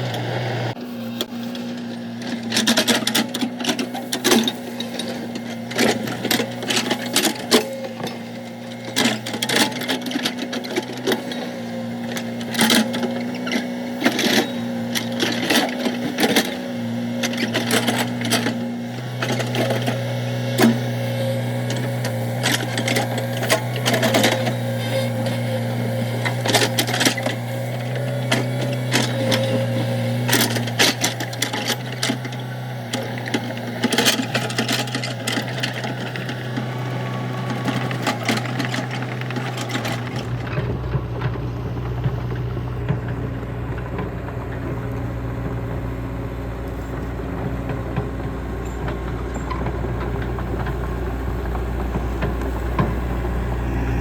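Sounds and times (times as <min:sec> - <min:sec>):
excavator diesel engine running: 0:00.0 - 0:54.0
machine knocks and clatter: 0:37.7 - 0:45.9.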